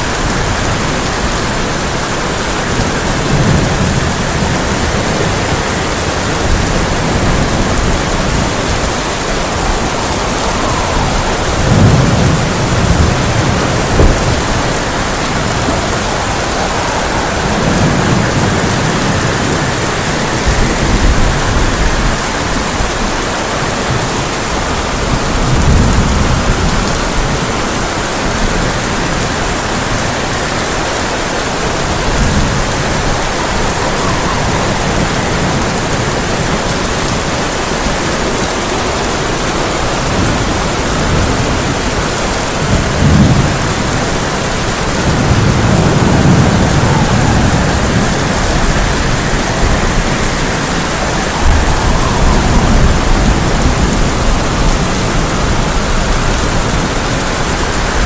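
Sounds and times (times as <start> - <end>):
heavy rain on a tin roof: 0.0 - 58.0
thunder rolling: 0.0 - 58.0
sharp thunder crack: 6.1 - 23.2.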